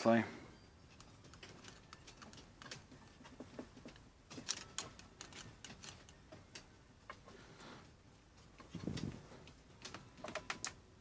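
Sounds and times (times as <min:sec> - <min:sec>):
small metal parts clicking: 0:00.9 - 0:03.2, 0:03.9 - 0:06.7.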